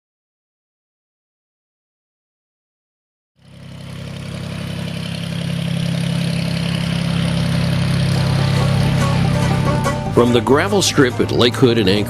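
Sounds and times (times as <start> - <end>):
small plane engine droning: 3.4 - 12.0.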